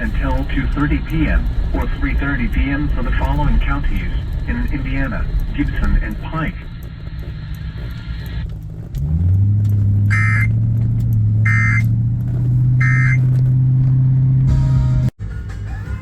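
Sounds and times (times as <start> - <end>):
loud steady low hum: 0.0 - 9.0, 9.6 - 13.5
warbling data bursts: 10.1 - 10.6, 11.4 - 11.9, 12.8 - 13.2.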